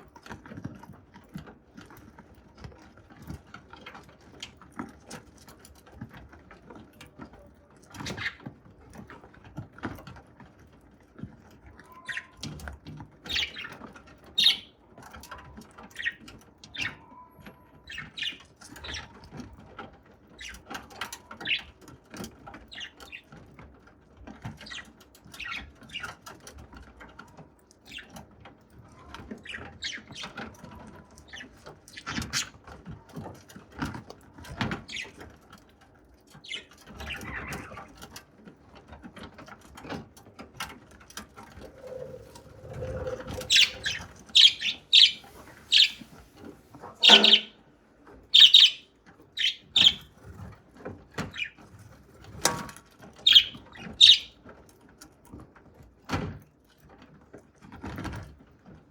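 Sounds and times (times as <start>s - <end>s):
budgerigar chirping: 14.4s - 14.7s, 41.7s - 46.2s, 46.8s - 47.6s, 48.4s - 50.1s, 53.3s - 54.3s.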